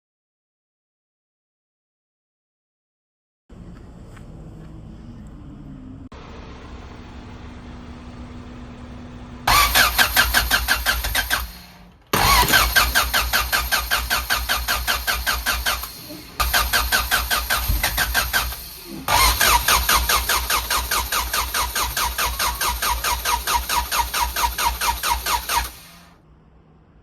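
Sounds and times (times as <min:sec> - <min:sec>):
engine cranking without starting: 0:09.4 - 0:26.2.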